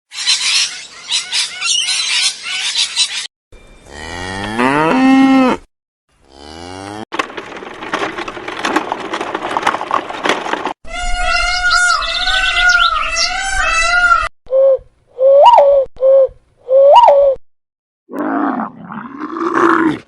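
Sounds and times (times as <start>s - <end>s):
cow mooing: 3.9s - 7.0s.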